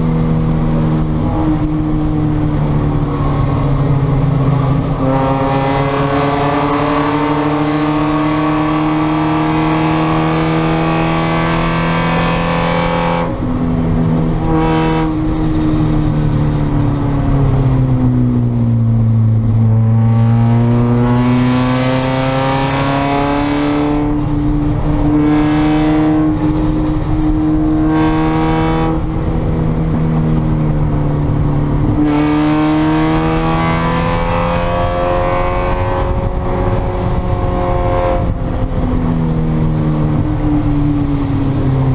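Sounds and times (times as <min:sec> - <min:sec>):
racing car engine revving: 0:00.0 - 0:13.4, 0:19.3 - 0:30.2, 0:31.2 - 0:38.9.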